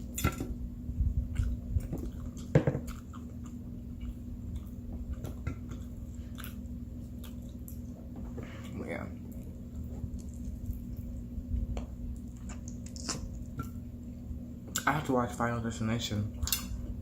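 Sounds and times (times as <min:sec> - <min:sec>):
person chewing food: 0:01.1 - 0:13.9.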